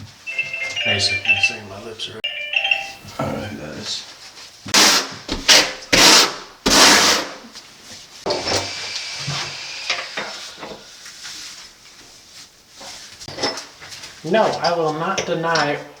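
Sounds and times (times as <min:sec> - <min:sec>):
soft steady scraping: 0:10.3 - 0:13.3.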